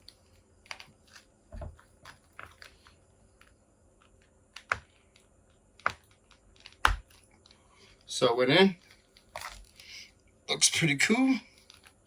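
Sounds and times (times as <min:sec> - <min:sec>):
soft thump: 0:01.5 - 0:01.8.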